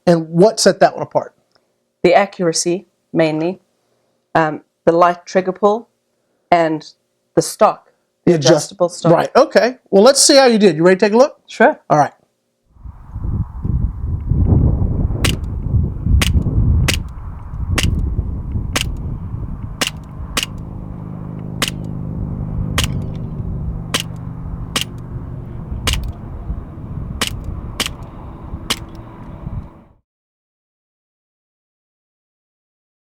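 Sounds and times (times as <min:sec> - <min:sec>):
low rumble: 0:12.8 - 0:30.0
airsoft gun shots: 0:15.2 - 0:15.6, 0:16.2 - 0:18.1, 0:18.7 - 0:19.0, 0:19.8 - 0:20.7, 0:21.6 - 0:22.0, 0:22.7 - 0:25.1, 0:25.8 - 0:26.2, 0:27.2 - 0:28.1, 0:28.7 - 0:29.0.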